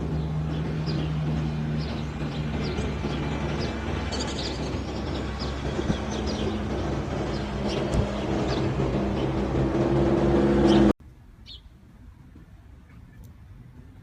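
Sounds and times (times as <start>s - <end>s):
small birds chirping: 0.0s - 9.6s, 10.6s - 11.8s
vehicle engine running: 0.0s - 11.0s.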